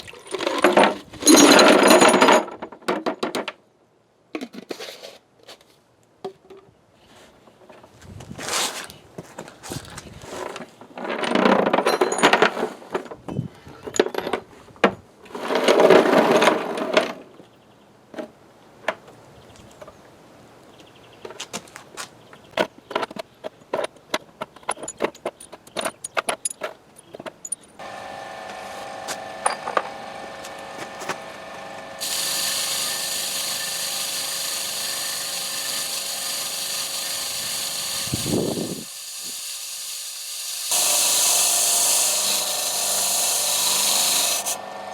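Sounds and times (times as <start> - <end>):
handling noise and clicks: 21.2 - 27.8
electric motor humming: 27.8 - 44.9.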